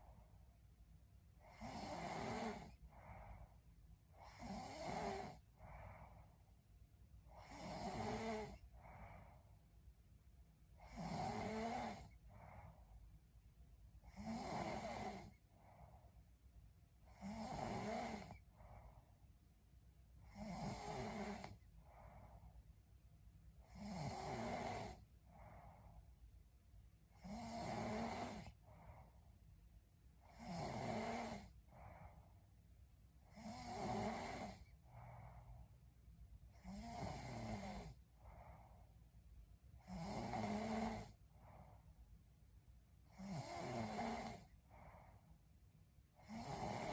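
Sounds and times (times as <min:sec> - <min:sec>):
soft breath: 0:00.0 - 0:09.8, 0:10.7 - 0:13.2, 0:14.9 - 0:16.7, 0:17.8 - 0:19.4, 0:20.1 - 0:22.8, 0:23.6 - 0:26.4, 0:27.8 - 0:39.3, 0:40.3 - 0:42.3, 0:44.3 - 0:45.6
woman snoring: 0:01.4 - 0:03.4, 0:04.2 - 0:06.2, 0:07.3 - 0:09.3, 0:10.8 - 0:12.8, 0:14.1 - 0:15.8, 0:17.1 - 0:18.5, 0:20.2 - 0:22.2, 0:23.6 - 0:25.8, 0:27.1 - 0:29.0, 0:30.2 - 0:32.1, 0:33.3 - 0:35.5, 0:36.5 - 0:38.6, 0:39.8 - 0:41.2, 0:43.1 - 0:45.1, 0:46.2 - 0:46.9.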